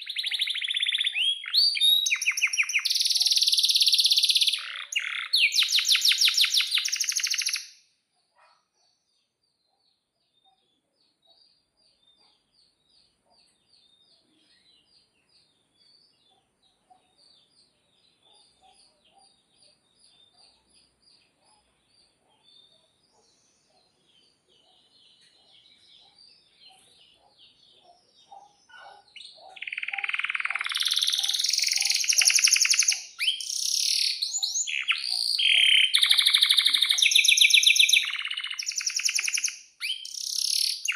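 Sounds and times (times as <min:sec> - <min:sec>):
soft bird twittering: 0:00.0 - 0:09.0
canary singing trills: 0:00.0 - 0:40.9.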